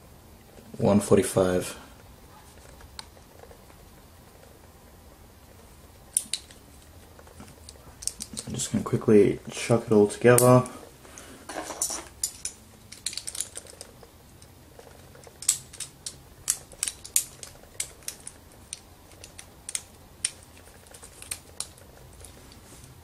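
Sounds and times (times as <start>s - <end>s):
spinning top parts clicking together: 11.8s - 22.6s.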